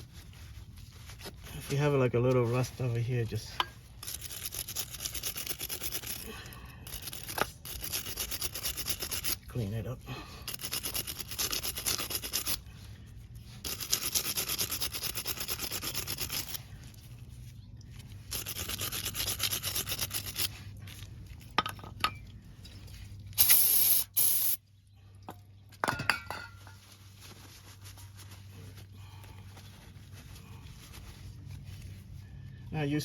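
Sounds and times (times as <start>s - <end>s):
wire brush scrubbing metal: 1.4s - 6.3s, 6.9s - 12.7s, 13.4s - 16.9s, 18.0s - 21.2s
loud hiss: 23.4s - 24.6s.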